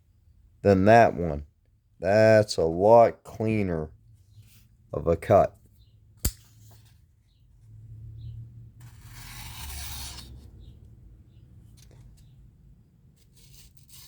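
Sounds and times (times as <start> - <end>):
knife slicing through paper: 8.8 - 10.4, 13.2 - 14.0.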